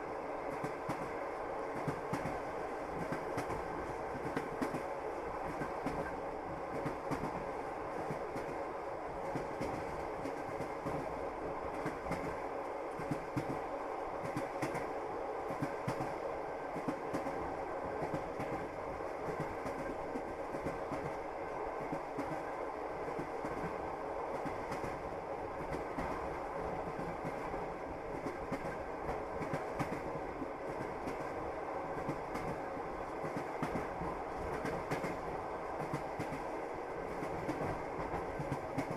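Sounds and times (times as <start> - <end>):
train wheels clattering over rails: 1.8 - 8.6, 32.0 - 38.9.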